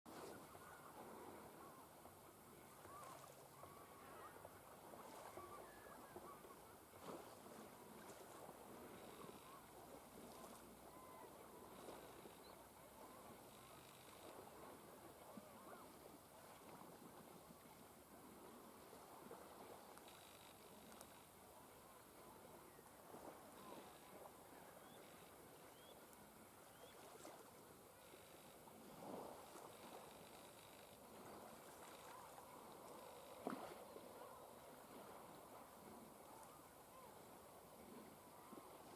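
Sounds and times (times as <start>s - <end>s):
small waves washing on shore: 0.1s - 38.9s
faint bird chirps: 5.1s - 6.7s, 9.0s - 9.7s, 10.3s - 14.4s, 15.3s - 16.0s, 23.6s - 27.4s.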